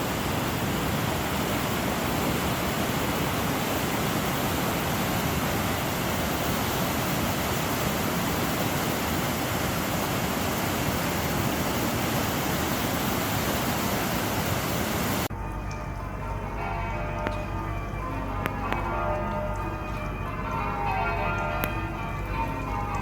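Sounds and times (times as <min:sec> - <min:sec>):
water rushing over weir: 0:00.0 - 0:15.3.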